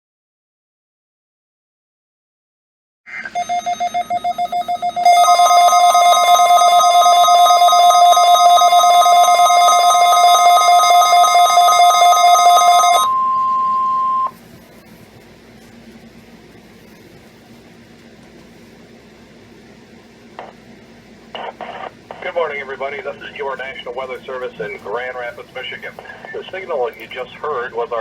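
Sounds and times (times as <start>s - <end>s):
steady alarm tone: 3.3s - 14.3s.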